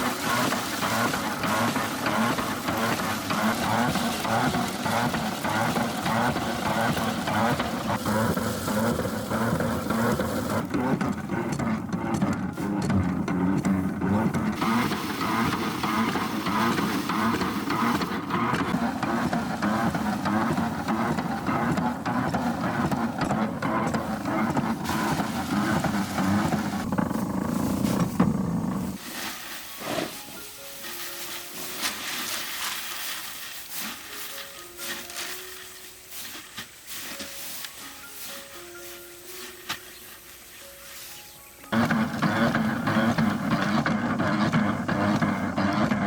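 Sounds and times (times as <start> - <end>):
small engine running under load: 0.0 - 29.0, 41.6 - 46.0.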